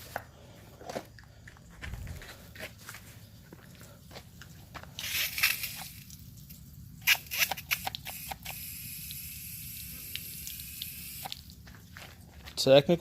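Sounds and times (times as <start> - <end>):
water spraying from pressure washer: 5.0 - 11.5.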